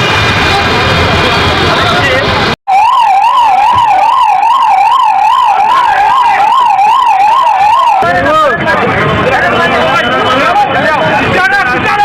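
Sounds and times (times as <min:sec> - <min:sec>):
emergency siren yelping: 0:02.7 - 0:10.6.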